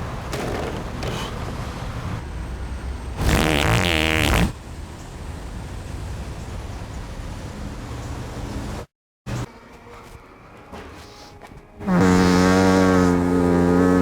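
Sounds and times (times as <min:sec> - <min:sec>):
wet fart: 0:03.2 - 0:04.5, 0:11.8 - 0:14.0.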